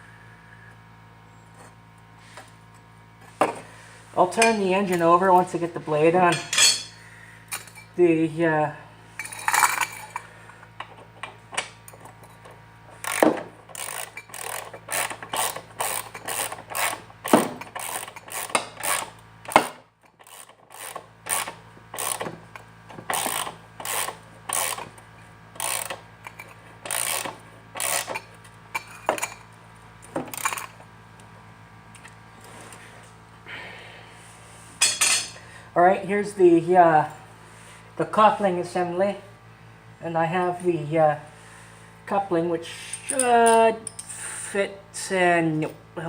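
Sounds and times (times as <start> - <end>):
socket ratchet clicking: 13.0 - 22.2.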